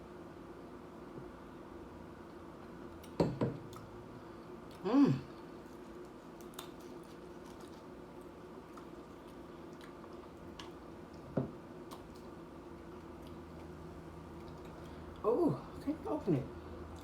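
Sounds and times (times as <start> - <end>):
low steady hum: 0.0 - 17.0
chewing nachos: 2.2 - 15.8, 16.7 - 17.0
short hummed mm: 4.8 - 5.4.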